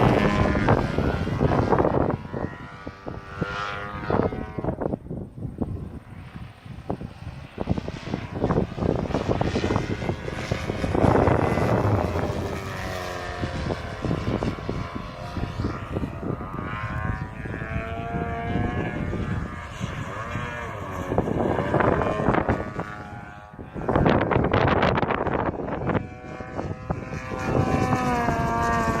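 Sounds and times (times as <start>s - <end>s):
model plane engine droning: 0.0s - 29.0s.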